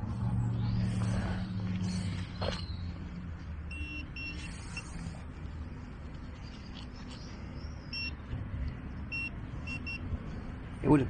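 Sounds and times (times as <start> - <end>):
high-pitched electronic beeps: 3.7 - 5.0, 7.9 - 8.2.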